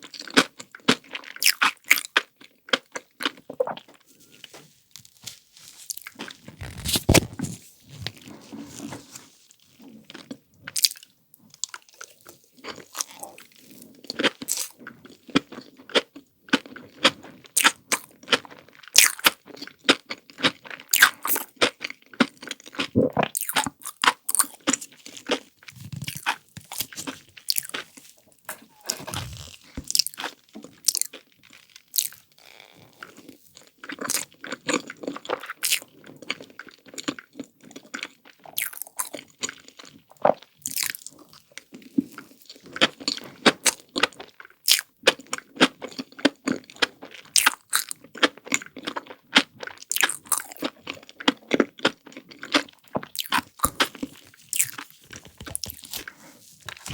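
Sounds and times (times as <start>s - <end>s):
crunching ice cream: 5.8s - 56.9s
wet chewing: 22.2s - 31.3s, 49.7s - 56.9s.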